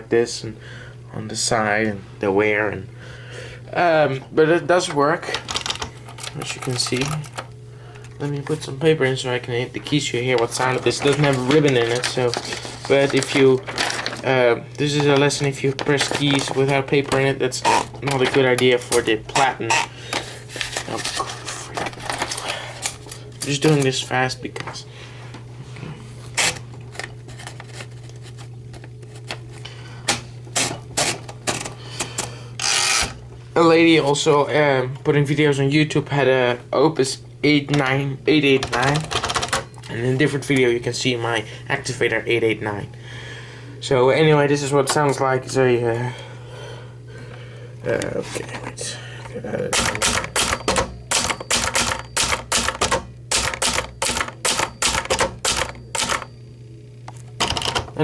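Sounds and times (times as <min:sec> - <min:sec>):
steady low hum: 0:00.0 - 0:58.0
manual typewriter clicks: 0:38.6 - 0:39.7, 0:49.7 - 0:56.3.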